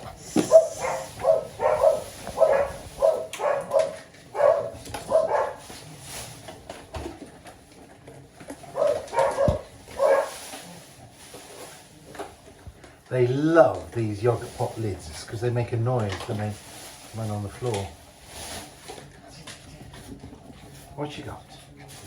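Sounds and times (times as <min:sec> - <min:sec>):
puppies yapping: 0:00.1 - 0:05.7, 0:08.7 - 0:10.4.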